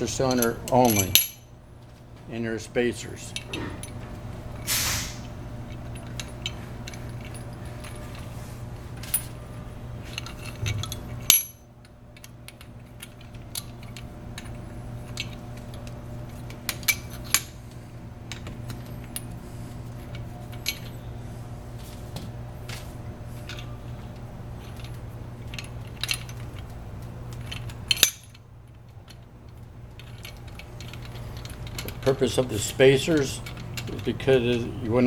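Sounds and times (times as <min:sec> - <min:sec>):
steady low hum: 0:00.0 - 0:35.0
metallic clinks and taps: 0:00.3 - 0:01.5, 0:10.1 - 0:14.5.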